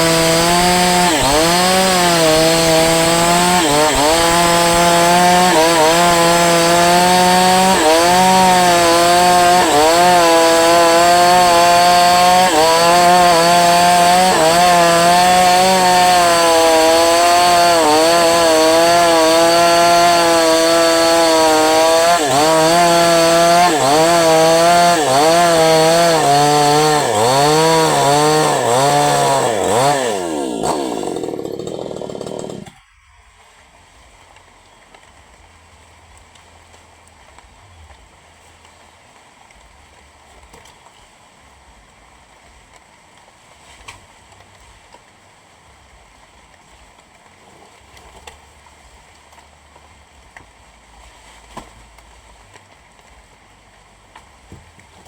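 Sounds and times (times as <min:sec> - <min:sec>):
chainsaw running at high revs: 0:00.0 - 0:32.8.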